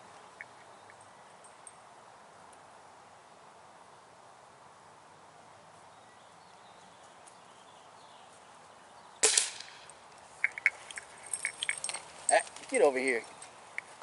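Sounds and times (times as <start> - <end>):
air rifle shot: 9.2 - 9.8.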